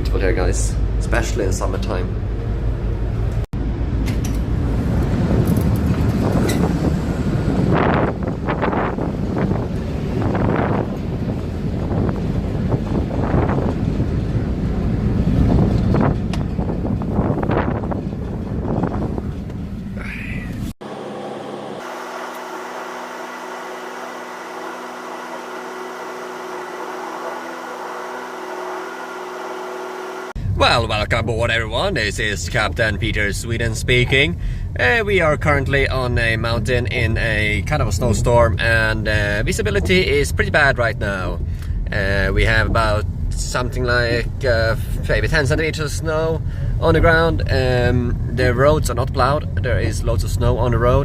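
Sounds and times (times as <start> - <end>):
low rumble: 0.0 - 20.8, 30.3 - 51.0
machine engine hum: 0.0 - 30.6
wind noise on microphone: 3.6 - 20.7.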